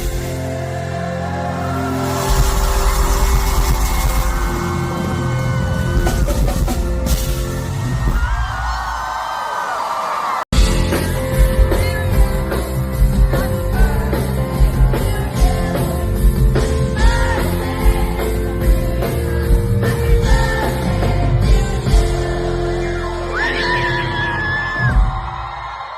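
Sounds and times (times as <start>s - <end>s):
live band music: 0.0s - 8.4s, 10.6s - 24.0s
steady drum beat: 2.2s - 8.5s
person singing: 10.7s - 24.8s.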